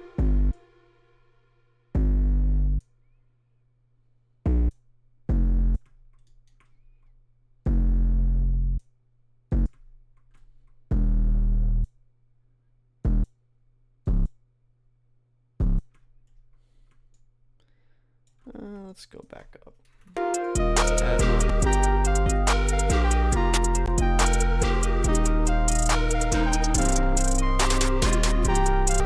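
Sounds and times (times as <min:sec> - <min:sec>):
bass notes in a trap beat: 0:02.0 - 0:02.9, 0:04.5 - 0:05.9, 0:07.7 - 0:08.9, 0:10.9 - 0:12.0, 0:15.6 - 0:15.9, 0:20.2 - 0:29.0.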